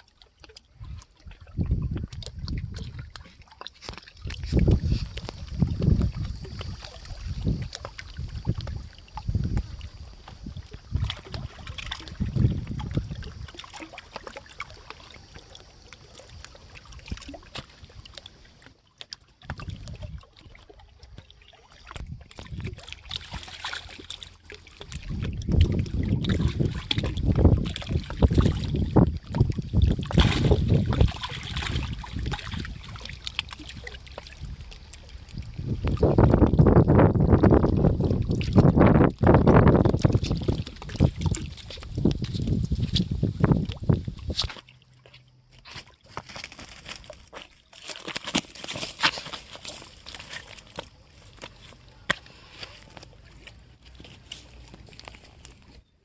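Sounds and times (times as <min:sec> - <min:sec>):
wind buffeting microphone: 0:00.8 - 0:03.2, 0:04.2 - 0:13.6, 0:19.4 - 0:20.4, 0:21.9 - 0:23.2, 0:24.8 - 0:44.6.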